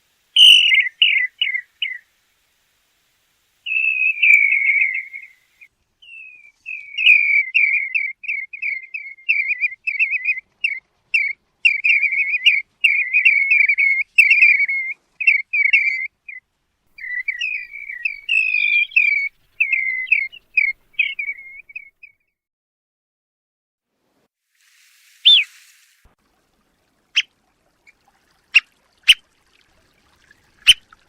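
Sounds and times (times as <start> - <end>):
plover whistled calls: 0.4 - 2.1, 3.7 - 16.4, 17.0 - 21.9, 25.3 - 25.5, 30.6 - 30.8.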